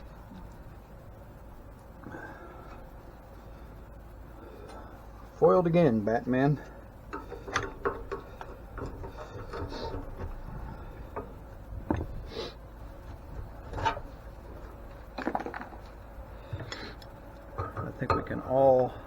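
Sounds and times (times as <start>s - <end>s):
hand tools knocking on metal: 17.6s - 18.4s.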